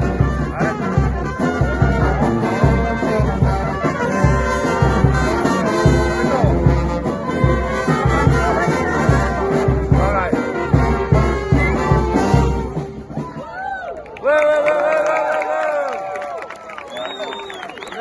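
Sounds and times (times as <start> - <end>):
brass band playing: 0.0 - 13.4.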